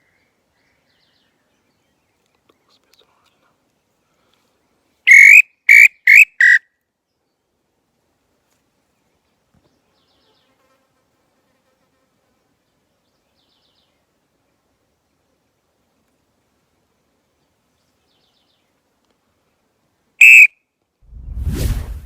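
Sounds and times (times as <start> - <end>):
wooden bird call whistle: 5.1 - 6.6, 20.2 - 20.6.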